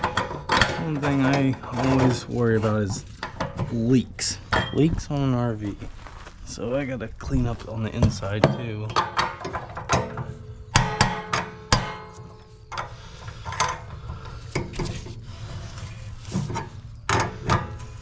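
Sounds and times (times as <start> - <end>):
hand tools knocking on metal: 7.9 - 12.9.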